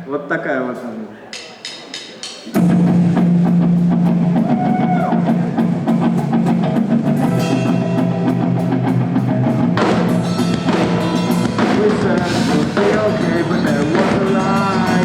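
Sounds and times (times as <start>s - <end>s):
drum kit beat: 1.4s - 15.0s
sustained low note: 2.6s - 12.5s
electric guitar: 2.6s - 15.0s.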